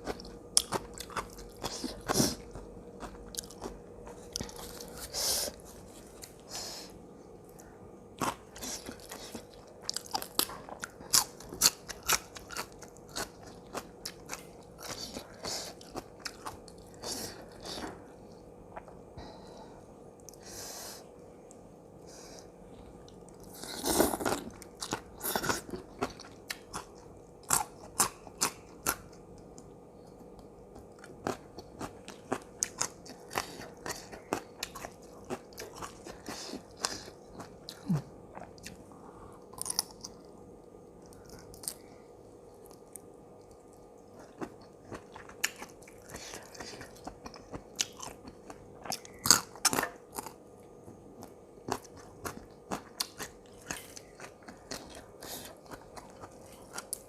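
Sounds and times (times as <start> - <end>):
crisp crunching and chewing: 0.0 - 6.4, 8.2 - 18.0, 30.3 - 38.8, 39.5 - 40.4, 41.0 - 41.9, 42.5 - 50.5, 51.2 - 57.0
faint steady hum: 0.0 - 57.0.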